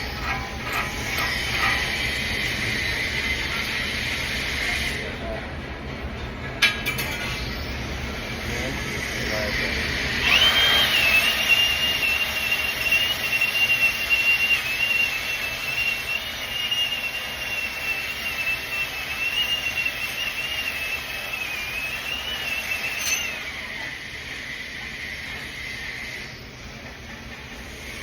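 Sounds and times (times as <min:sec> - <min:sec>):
welding arc whining and hissing: 0:00.0 - 0:05.4, 0:06.6 - 0:28.0.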